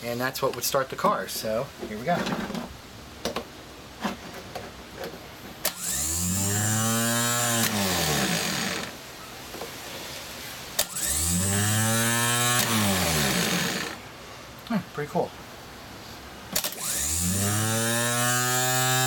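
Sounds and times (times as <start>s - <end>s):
starter motor clicking: 5.6s - 9.0s, 10.8s - 14.0s, 16.6s - 19.0s
starter motor whirring: 5.6s - 9.0s, 10.8s - 14.0s, 16.6s - 19.0s.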